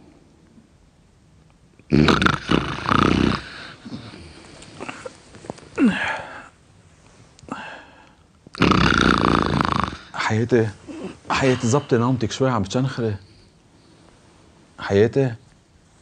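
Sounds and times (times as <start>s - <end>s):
person snoring loudly: 1.9s - 5.0s, 8.6s - 10.2s
snort falling in pitch: 1.9s - 5.1s, 8.5s - 10.2s.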